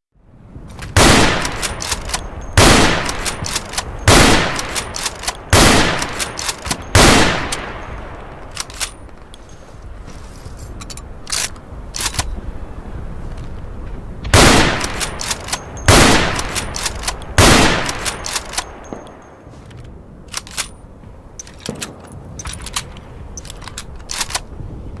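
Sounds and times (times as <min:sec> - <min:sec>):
rifle bolt clicks: 0:00.7 - 0:09.5, 0:10.8 - 0:12.3, 0:14.6 - 0:20.8, 0:21.4 - 0:24.5
rifle shots echoing: 0:00.9 - 0:09.1, 0:14.3 - 0:19.2.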